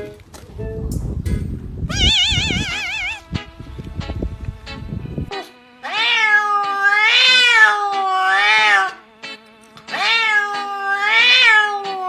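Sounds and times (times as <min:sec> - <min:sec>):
cat meowing: 0:01.9 - 0:03.4, 0:05.3 - 0:09.0, 0:09.9 - 0:12.0.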